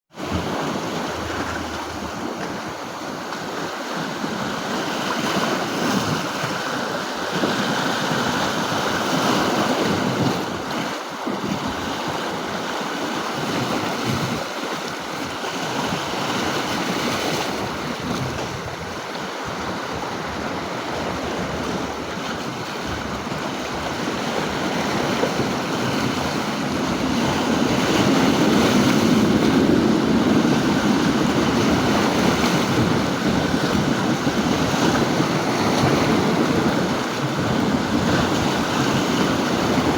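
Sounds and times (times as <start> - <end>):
wind buffeting microphone: 0.1 - 39.9
sea surf washing in: 0.2 - 7.3, 16.0 - 39.9.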